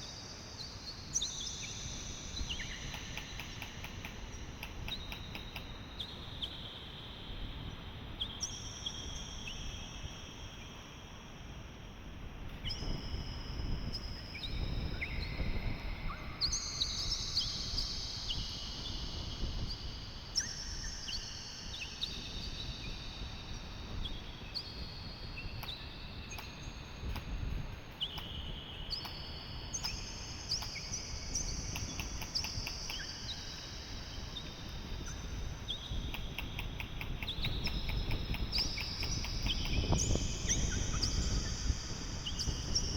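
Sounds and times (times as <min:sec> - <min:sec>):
wind buffeting microphone: 0:12.6 - 0:21.2, 0:22.0 - 0:42.9.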